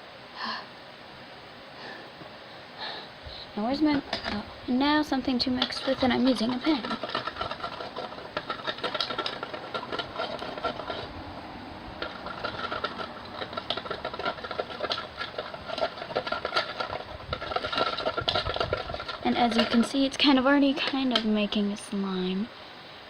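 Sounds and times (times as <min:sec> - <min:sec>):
pen stirring in container: 0:05.4 - 0:11.2, 0:11.9 - 0:21.3.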